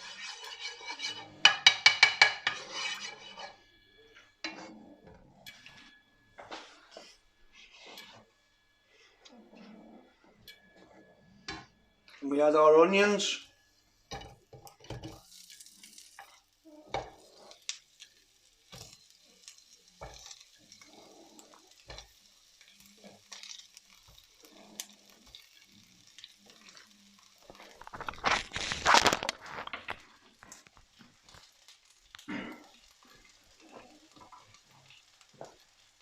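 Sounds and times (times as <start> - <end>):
onions sizzling in oil: 0.0 - 4.8, 11.5 - 36.0
stirring knocks and scrapes: 0.0 - 12.2, 14.1 - 36.0.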